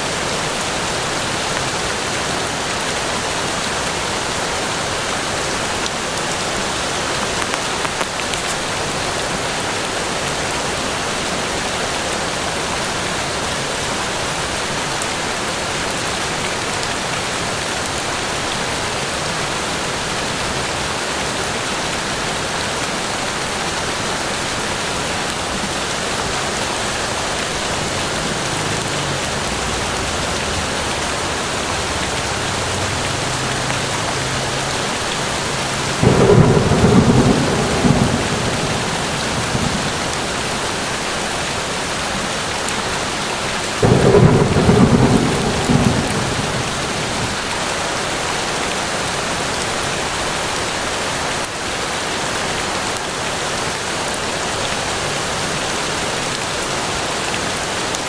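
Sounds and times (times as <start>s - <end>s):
steady rain falling: 0.0s - 58.0s
distant thunder rumble: 26.4s - 41.7s, 43.8s - 47.9s.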